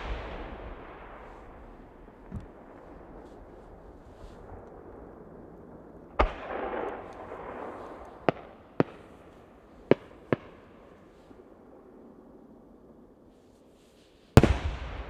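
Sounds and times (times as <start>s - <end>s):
sharp firework bangs: 14.4s - 15.0s.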